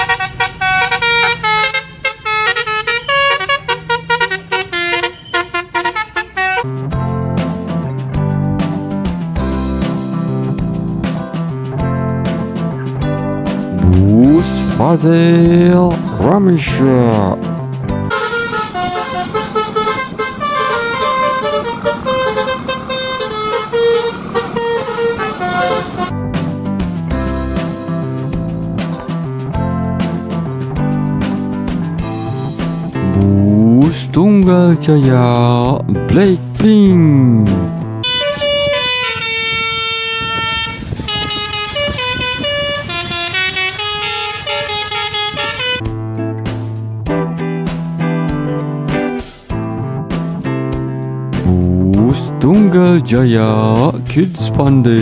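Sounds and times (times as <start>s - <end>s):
bus horn playing a tune: 0.0s - 6.8s, 18.1s - 26.1s, 38.0s - 45.9s.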